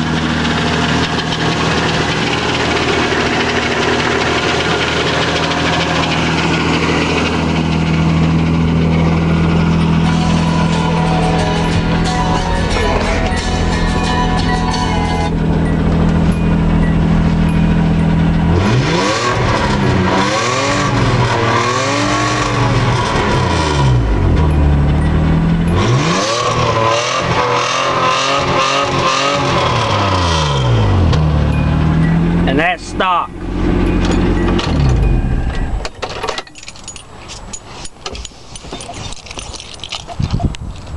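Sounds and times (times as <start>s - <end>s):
engine revving: 0.0s - 35.9s
pickup engine idling: 0.0s - 40.6s
keys jingling: 35.6s - 40.9s.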